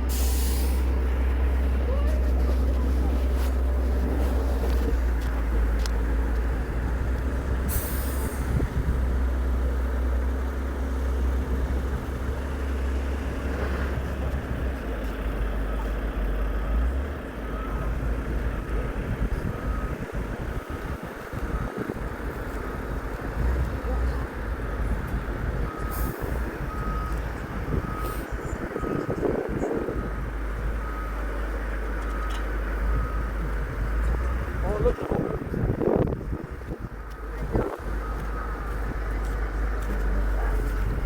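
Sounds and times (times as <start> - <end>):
truck engine rumbling: 0.0 - 41.0
air brake hissing: 0.1 - 1.0, 7.7 - 8.5
backing-up beeps: 15.5 - 41.0.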